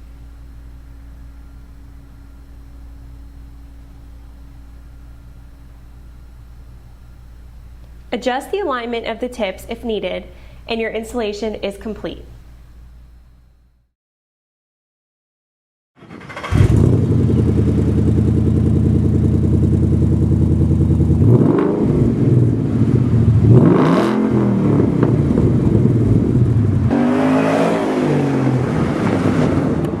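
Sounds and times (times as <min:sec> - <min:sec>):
engine revving: 0:16.1 - 0:30.0
car engine idling: 0:16.4 - 0:26.9.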